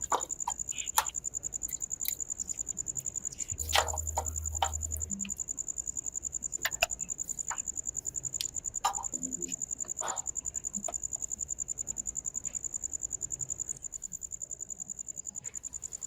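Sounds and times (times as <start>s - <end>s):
insect chirping trill: 0.0s - 16.0s
short low hum: 3.6s - 5.4s.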